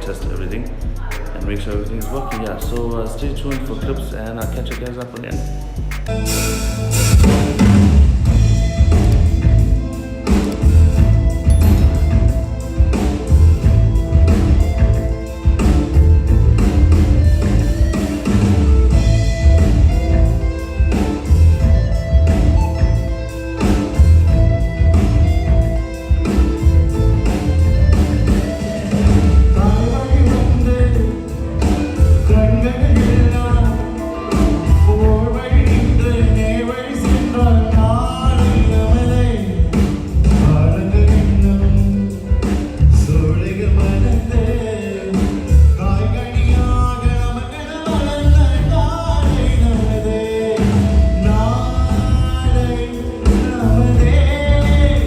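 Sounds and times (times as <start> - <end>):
band music with guitar: 0.0 - 55.0
person singing: 16.6 - 55.0.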